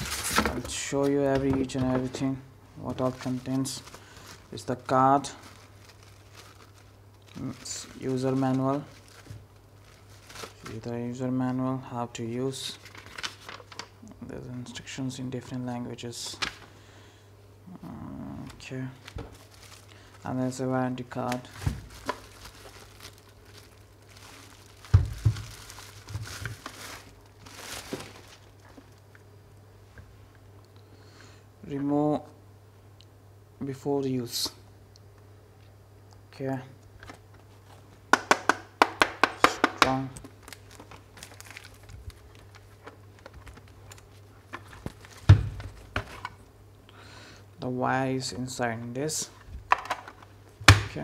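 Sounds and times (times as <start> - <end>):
packaging crinkling: 0.0 - 2.3, 2.9 - 10.9, 12.5 - 14.0, 18.4 - 29.1, 39.9 - 46.5
steady low hum: 0.0 - 38.2.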